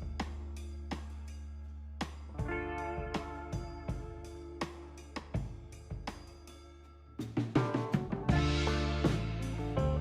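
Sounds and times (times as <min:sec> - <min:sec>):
held instrumental chords: 0:02.3 - 0:06.6, 0:07.7 - 0:10.0
drum beat: 0:07.4 - 0:10.0.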